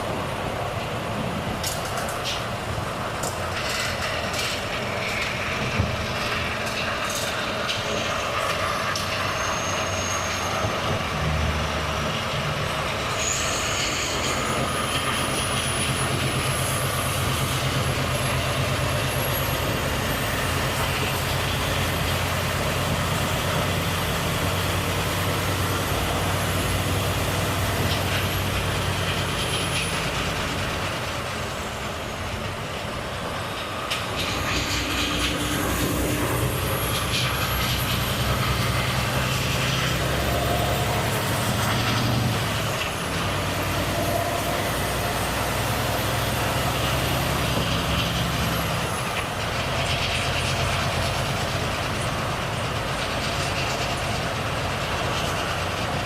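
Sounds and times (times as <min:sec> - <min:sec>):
truck diesel engine running: 0:00.0 - 0:56.0
high engine whistle: 0:08.9 - 0:11.2, 0:34.6 - 0:48.9.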